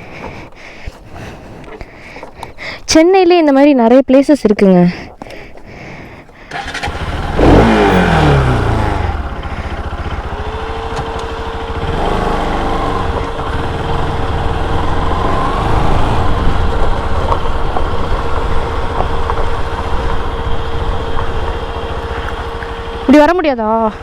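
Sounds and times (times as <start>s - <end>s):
motorcycle engine revving: 6.5s - 24.0s.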